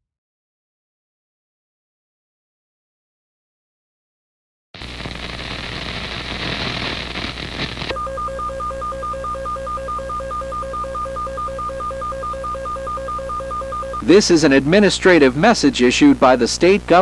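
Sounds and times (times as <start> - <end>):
harsh static noise: 4.8 - 17.0
pulsing two-tone alert beep: 7.9 - 14.0
low hum: 7.9 - 15.1.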